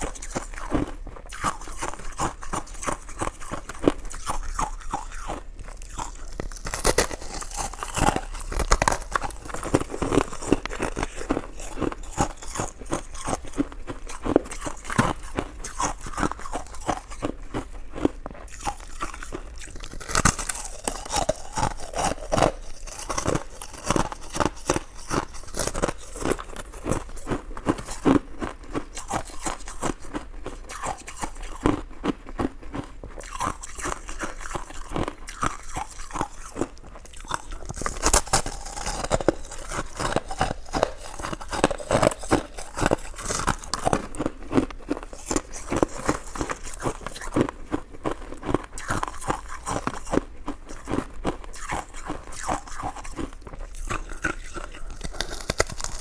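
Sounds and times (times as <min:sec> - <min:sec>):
person chewing wetly: 0:00.0 - 0:56.0.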